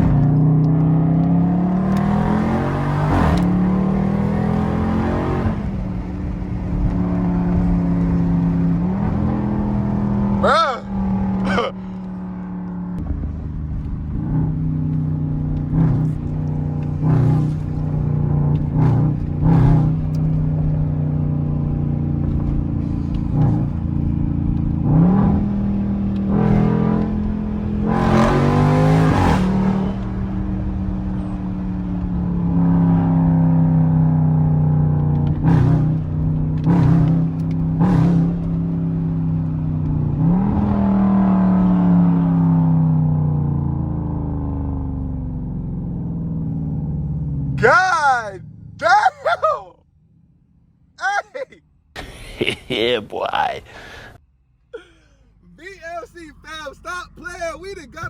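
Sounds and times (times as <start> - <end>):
car engine accelerating through gears: 0.0 - 49.0
exhaust pops and crackles: 35.0 - 39.0.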